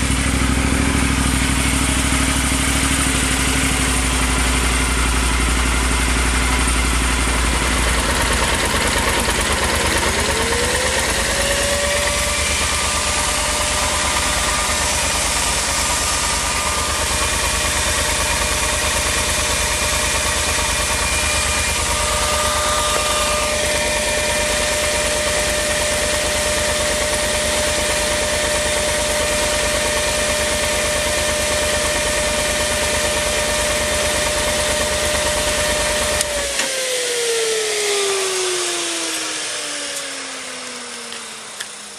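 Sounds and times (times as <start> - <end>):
motorcycle engine idling: 0.0 - 36.4
thin whine: 10.1 - 36.7.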